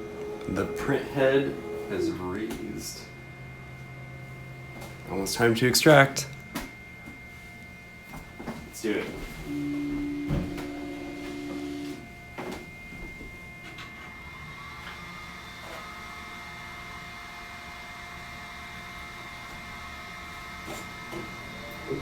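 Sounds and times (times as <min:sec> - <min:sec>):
printer motor whining: 0:00.0 - 0:03.9, 0:09.5 - 0:22.0.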